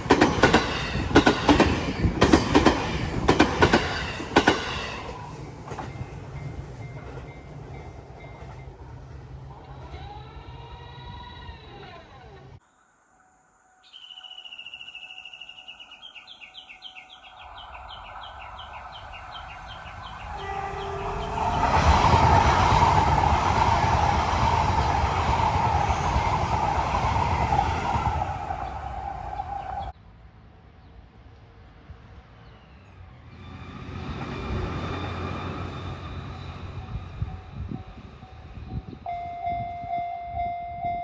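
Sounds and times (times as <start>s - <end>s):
train rumble and wheel noise: 0.0s - 12.6s, 16.4s - 41.0s
low train horn: 19.4s - 24.4s
level-crossing alarm two-note: 39.1s - 41.0s.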